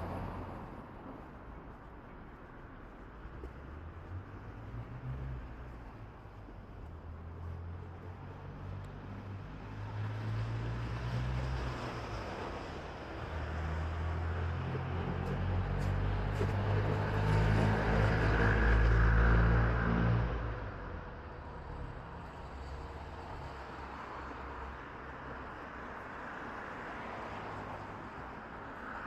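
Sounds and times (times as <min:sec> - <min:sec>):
street noise: 0:00.0 - 0:29.0
vehicle engine approaching: 0:03.4 - 0:23.6.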